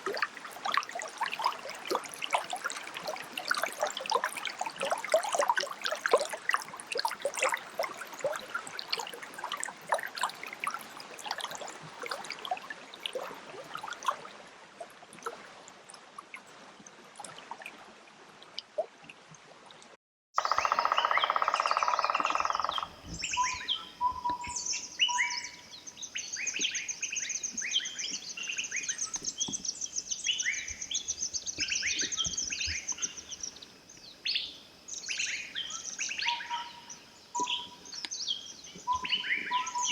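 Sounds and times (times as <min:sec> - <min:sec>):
water trickling over rocks: 0:00.0 - 0:24.8
forest birds chirping: 0:20.4 - 0:39.9.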